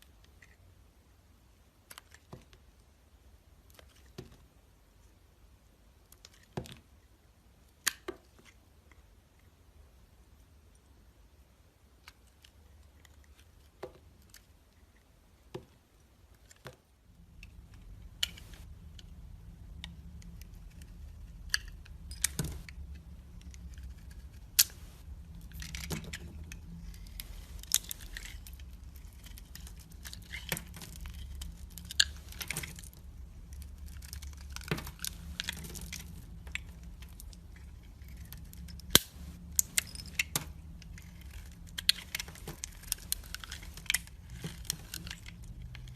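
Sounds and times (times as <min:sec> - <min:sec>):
steady low hum: 0:17.0 - 0:45.9.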